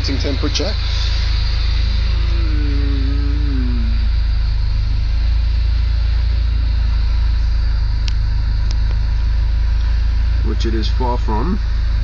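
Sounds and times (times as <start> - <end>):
car engine idling: 0.0 - 12.0
short falling tone: 1.8 - 4.3.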